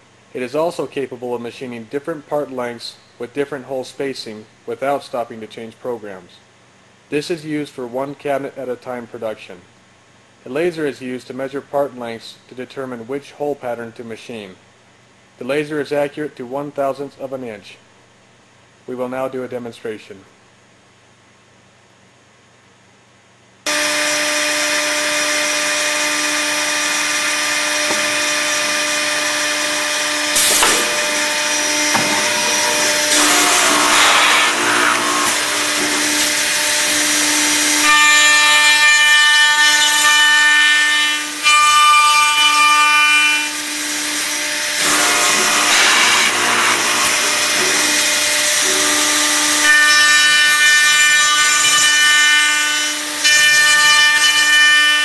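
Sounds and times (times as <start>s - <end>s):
high whine: 23.7s - 37.7s
machine motors humming: 23.7s - 40.2s, 43.6s - 50.6s
boring head cutting wood: 23.7s - 55.0s.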